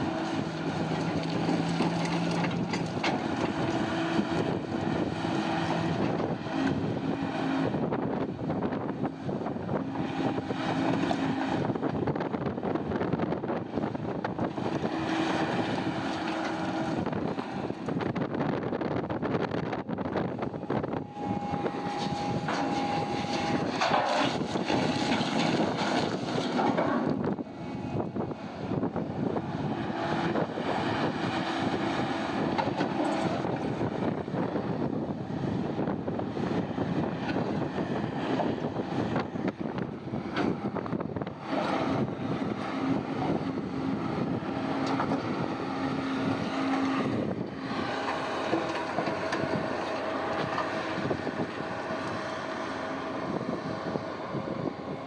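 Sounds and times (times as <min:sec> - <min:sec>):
heavy machinery engines running: 0:00.0 - 0:55.0
rock clattering in crusher: 0:22.3 - 0:27.2.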